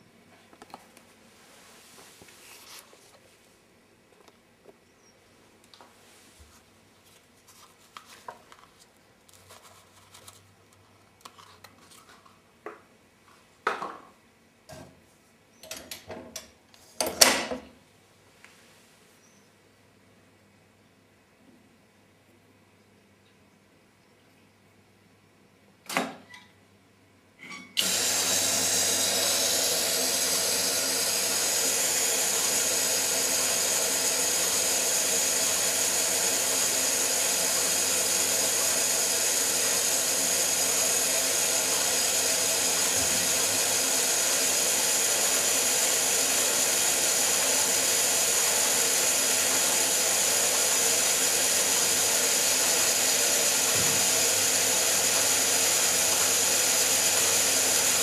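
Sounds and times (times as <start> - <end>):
washing machine motor hum: 27.8 - 58.0.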